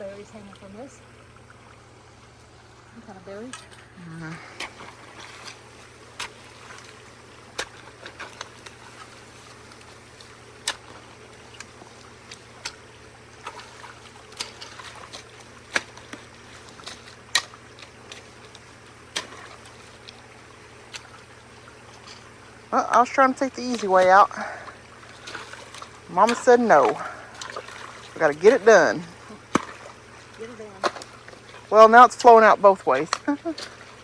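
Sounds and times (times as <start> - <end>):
creek water trickling: 0.0 - 34.0
sharp cracks and knocks: 29.5 - 30.0.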